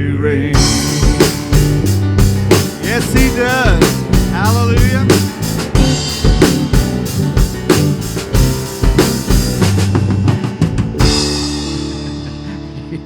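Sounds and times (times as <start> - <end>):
held bass and keyboard notes: 0.5 - 13.0
cymbal crash: 0.6 - 2.9
drum kit beating: 0.6 - 13.0.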